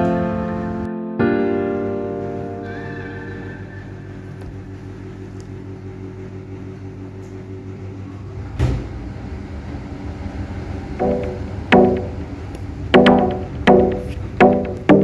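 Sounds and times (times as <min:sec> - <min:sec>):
washing machine motor hum: 0:04.2 - 0:15.0.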